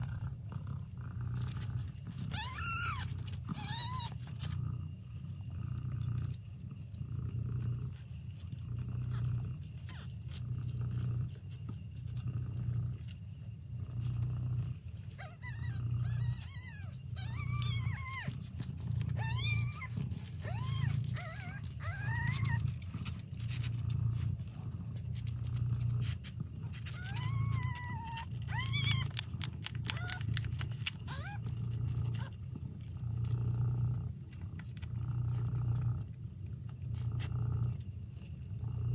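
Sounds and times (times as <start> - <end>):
cat purring: 0.0 - 38.9.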